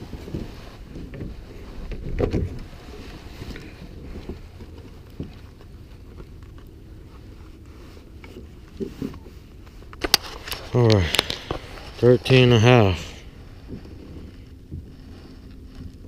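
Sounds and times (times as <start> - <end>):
wind buffeting microphone: 0.0 - 5.9.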